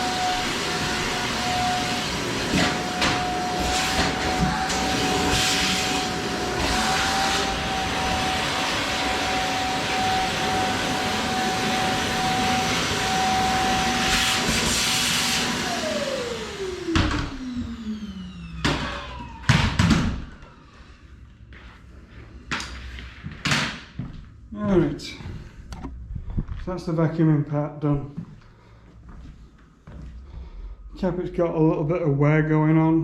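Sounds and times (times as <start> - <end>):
vacuum cleaner running: 0.0 - 21.7.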